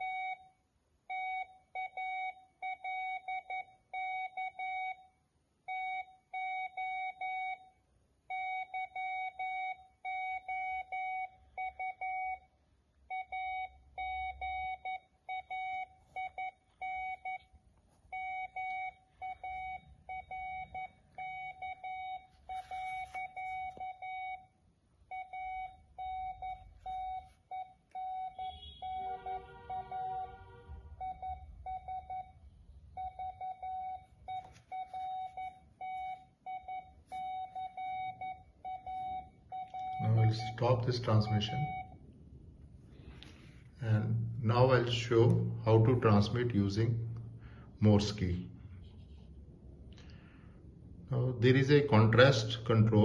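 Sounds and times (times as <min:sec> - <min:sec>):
morse code beeps: 0:05.7 - 0:12.5, 0:13.1 - 0:42.0
beeping at varied pitches: 0:13.1 - 0:42.0.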